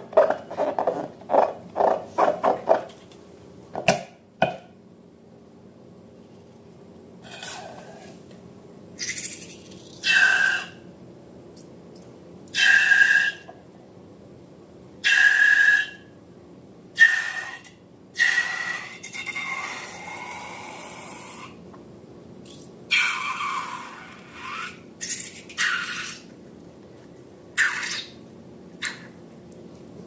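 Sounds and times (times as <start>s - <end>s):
air squealing out of balloon: 22.9s - 26.3s.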